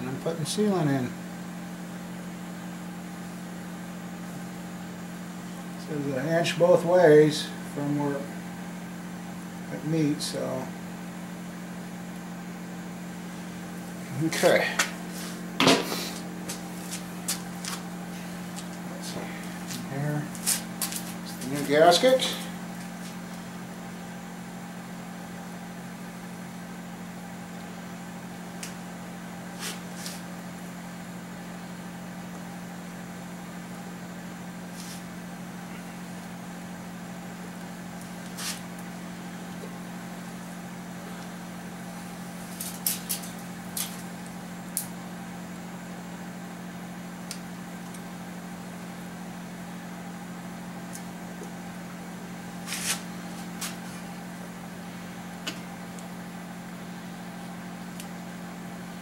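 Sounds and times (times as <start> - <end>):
steady low motor hum: 0.0 - 59.0.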